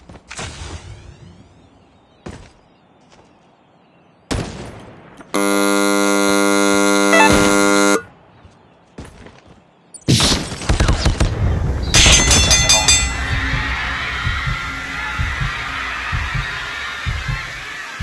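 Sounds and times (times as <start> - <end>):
harsh buzzer tone: 5.4 - 8.1
sharp hit: 11.7 - 17.3.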